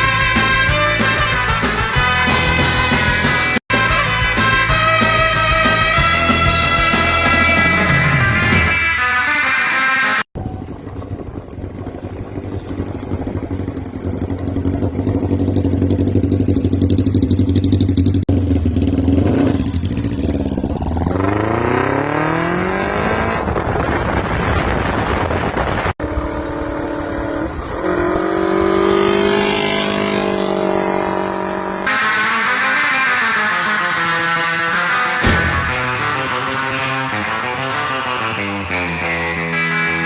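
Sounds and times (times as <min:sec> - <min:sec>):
motorcycle engine revving: 0:10.4 - 0:24.2, 0:26.0 - 0:40.0.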